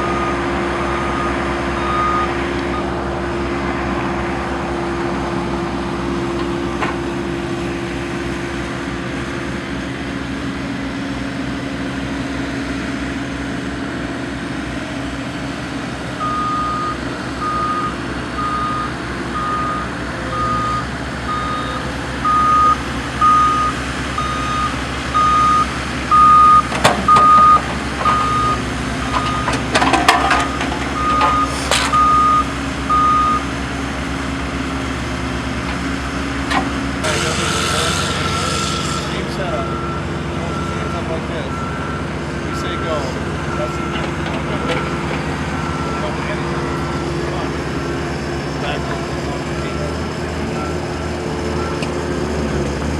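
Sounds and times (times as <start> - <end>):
backup alarm beeping: 0.0 - 3.0, 16.2 - 33.5
diesel engine running: 0.0 - 52.9.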